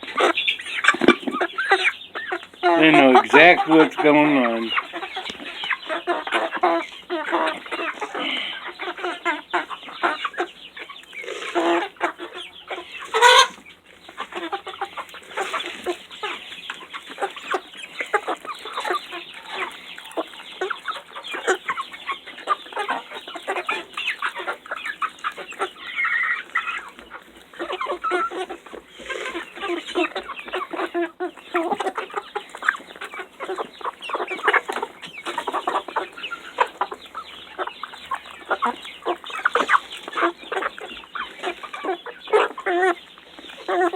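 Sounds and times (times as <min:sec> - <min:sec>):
chickens clucking: 0:00.0 - 0:43.9.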